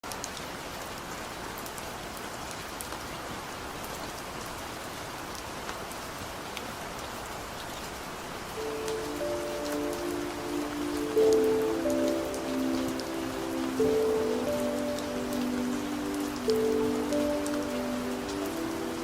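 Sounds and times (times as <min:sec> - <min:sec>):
steady rain hiss: 0:00.0 - 0:19.0
raindrops ticking: 0:08.6 - 0:19.0.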